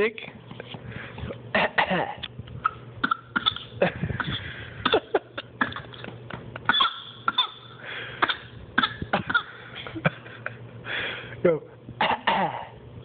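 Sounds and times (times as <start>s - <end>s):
child fake coughing: 1.6s - 6.0s, 6.7s - 9.6s, 12.0s - 12.8s.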